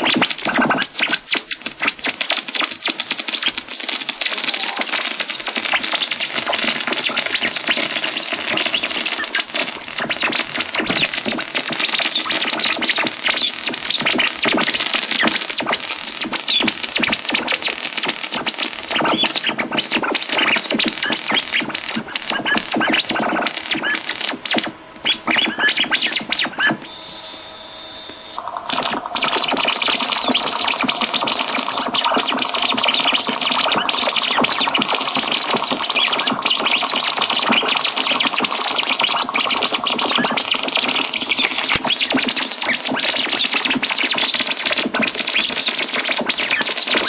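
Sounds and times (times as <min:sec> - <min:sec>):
glitchy electronic music: 0:00.0 - 0:47.0
thin high tone: 0:26.9 - 0:28.4.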